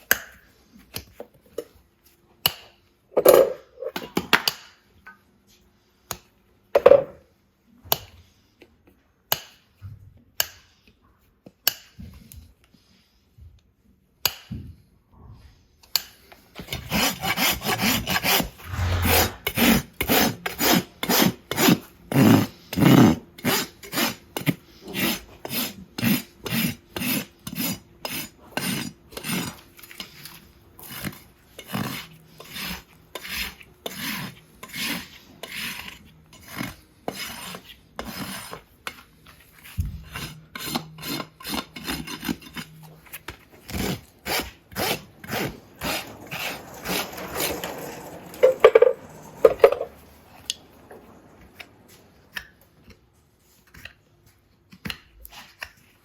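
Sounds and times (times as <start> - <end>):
rasp filing a hoof: 16.0 - 39.0, 39.6 - 48.6.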